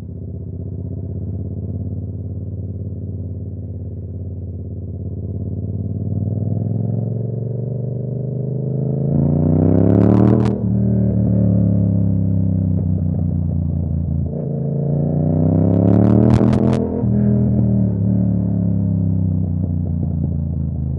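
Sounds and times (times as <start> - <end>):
motorcycle engine accelerating: 0.0 - 20.9
exhaust crackling: 15.7 - 18.2.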